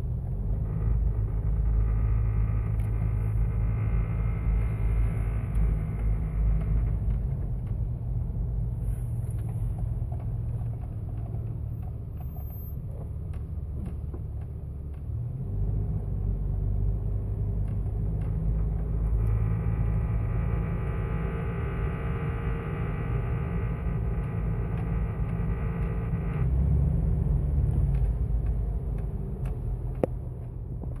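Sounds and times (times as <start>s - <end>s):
engine rumbling with buzz: 0.0s - 31.0s
high-pitched steady tone: 18.9s - 29.2s.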